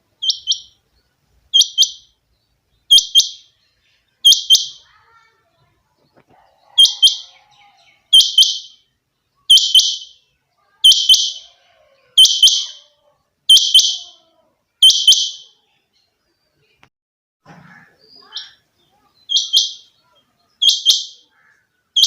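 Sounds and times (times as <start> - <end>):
quail double-note calls: 6.7 - 7.5, 9.5 - 10.2, 12.2 - 12.9, 13.5 - 14.2.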